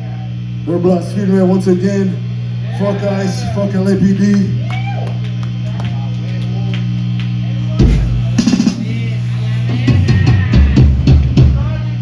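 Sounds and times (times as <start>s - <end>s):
low amplifier drone: 0.0s - 12.0s
drum kit playing: 6.8s - 11.8s
bass drum and cymbal hits: 7.8s - 12.0s.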